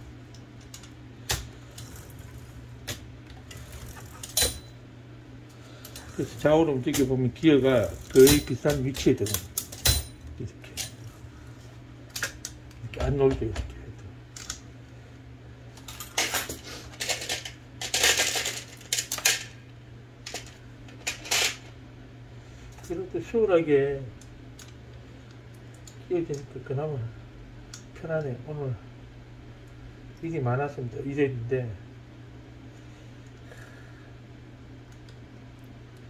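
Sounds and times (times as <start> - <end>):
low steady hum: 0.0 - 36.0
typewriter parts clinking and scraping: 7.8 - 10.1, 15.9 - 19.4
typewriter parts clicking: 8.0 - 10.1.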